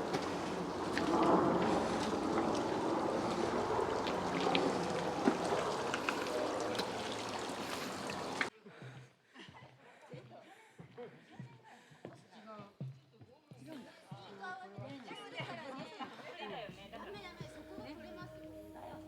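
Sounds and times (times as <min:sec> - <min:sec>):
stream rushing over rocks: 0:00.0 - 0:08.5.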